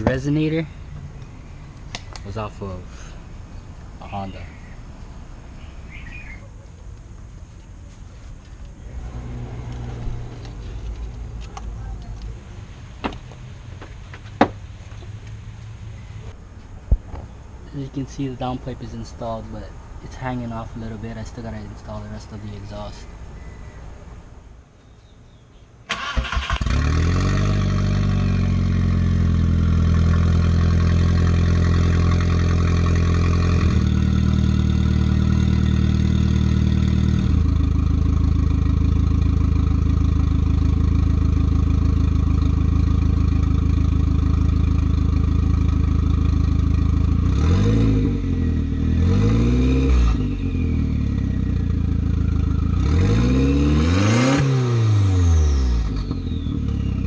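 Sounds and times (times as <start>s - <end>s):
loud car engine starting and revving: 8.8s - 11.8s, 25.9s - 57.0s.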